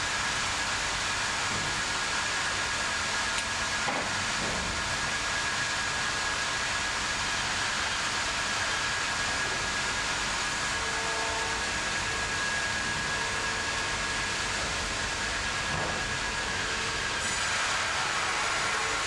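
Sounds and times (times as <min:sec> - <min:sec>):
sawmill machinery rushing: 0:09.0 - 0:19.0.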